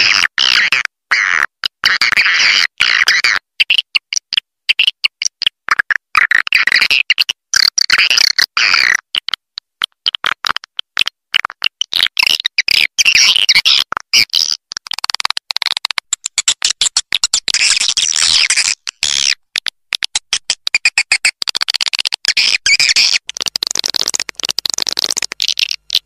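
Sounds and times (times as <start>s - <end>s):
sharp bird clicks: 14.7s - 26.0s.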